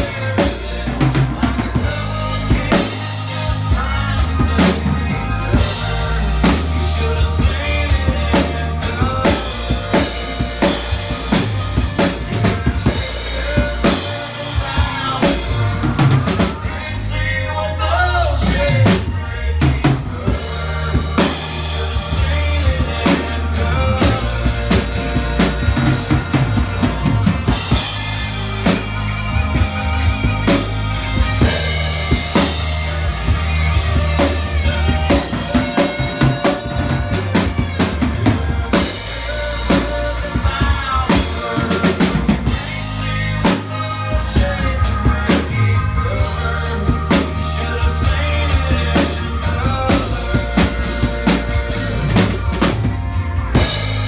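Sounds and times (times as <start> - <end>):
drum kit beat: 0.0 - 17.3, 18.3 - 54.0
instrumental band music: 0.0 - 54.0.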